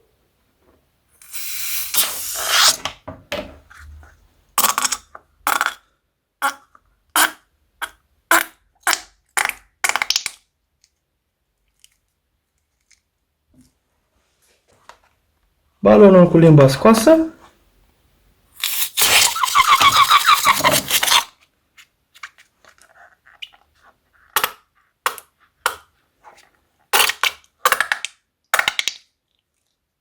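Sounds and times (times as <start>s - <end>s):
glue squirting from balloon: 1.2s - 3.0s, 18.6s - 21.4s.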